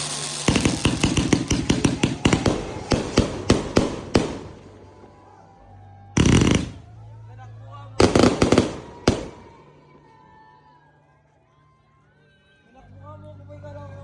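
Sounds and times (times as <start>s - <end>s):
fireworks sharp bangs: 0.0s - 5.1s, 6.2s - 7.0s, 8.0s - 9.8s.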